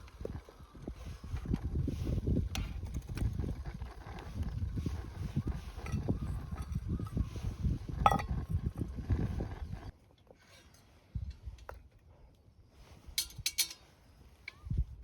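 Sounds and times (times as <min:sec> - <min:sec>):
camp cookware clinking: 0:07.9 - 0:08.7, 0:13.1 - 0:14.6.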